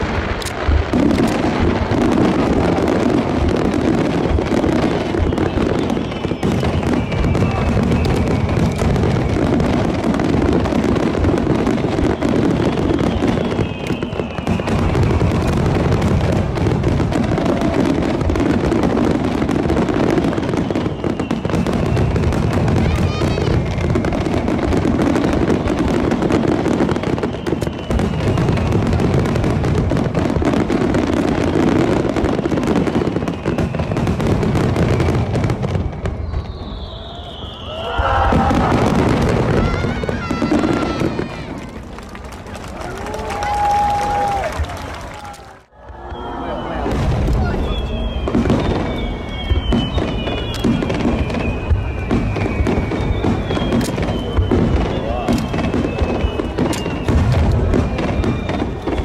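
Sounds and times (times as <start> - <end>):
fireworks crackling: 0.0 - 59.0
falling whistle tones: 4.8 - 10.6, 11.9 - 15.6, 20.0 - 25.3, 26.9 - 28.8, 32.3 - 41.6, 43.1 - 59.0.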